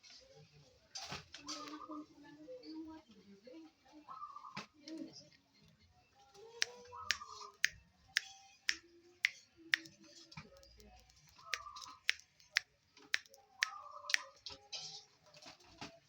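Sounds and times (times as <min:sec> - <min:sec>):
sharp clicks: 0:10.6 - 0:12.6, 0:13.2 - 0:14.3.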